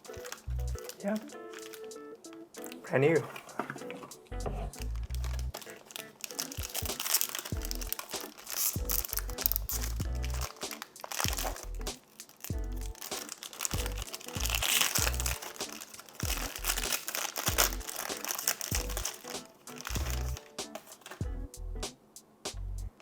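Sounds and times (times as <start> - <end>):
plastic wrapping crinkling: 0.0 - 21.2
background music with bass beat: 4.3 - 5.5, 8.8 - 10.6, 11.3 - 13.0, 13.8 - 15.4, 18.7 - 19.0, 19.9 - 20.5, 21.2 - 23.0.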